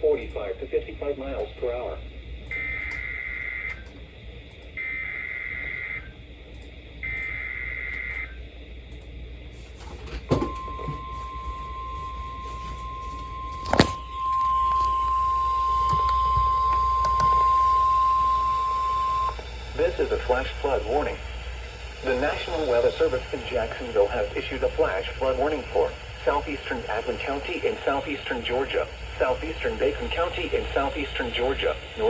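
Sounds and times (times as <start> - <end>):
steady warning alarm tone: 0.0 - 32.0
buzzy digital data bursts: 16.5 - 31.8.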